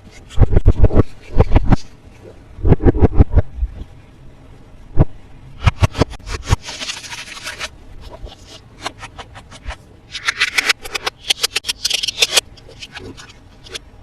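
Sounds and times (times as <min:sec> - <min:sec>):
packaging rustling scrape: 0:06.2 - 0:13.8.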